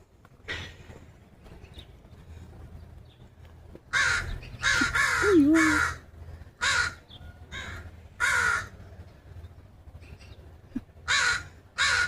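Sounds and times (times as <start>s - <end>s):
crows cawing: 3.9s - 8.8s, 11.0s - 12.0s.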